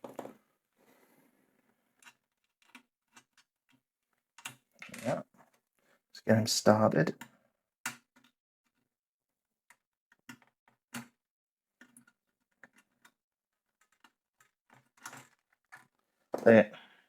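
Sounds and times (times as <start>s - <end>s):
small clicks and taps of tools: 2.0s - 3.8s, 4.4s - 5.0s.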